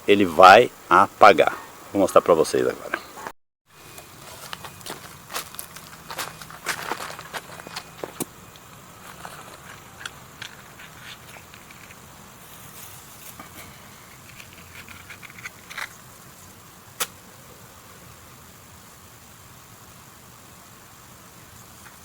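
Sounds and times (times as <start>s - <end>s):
dry sticks and straw rustling: 3.8s - 17.2s.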